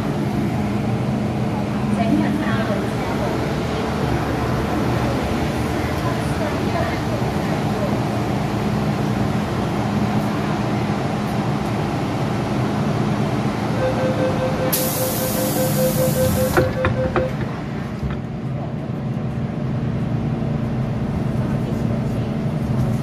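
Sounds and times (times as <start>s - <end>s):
train humming: 0.0s - 23.0s
rapid door warning beeps: 13.8s - 17.5s
air hiss: 14.7s - 15.9s
doors closing thuds: 16.4s - 18.2s.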